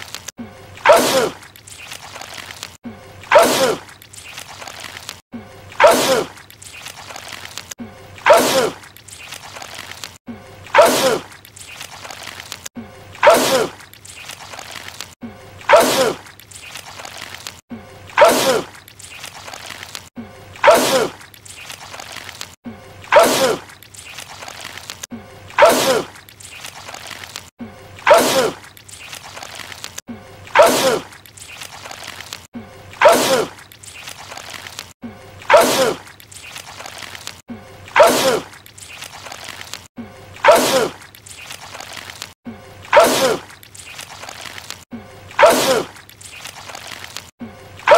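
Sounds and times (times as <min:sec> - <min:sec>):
man sneezing wetly: 0:00.8 - 0:01.4, 0:03.3 - 0:03.8, 0:05.8 - 0:06.3, 0:08.2 - 0:08.8, 0:10.7 - 0:11.3, 0:13.2 - 0:13.8, 0:15.7 - 0:16.2, 0:18.2 - 0:18.7, 0:20.6 - 0:21.2, 0:23.1 - 0:23.7, 0:25.6 - 0:26.1, 0:28.0 - 0:28.6, 0:30.6 - 0:31.1, 0:33.0 - 0:33.6, 0:35.5 - 0:36.0, 0:38.0 - 0:38.6, 0:40.4 - 0:41.0, 0:42.9 - 0:43.5, 0:45.4 - 0:45.9
man sneezing: 0:45.4 - 0:45.9.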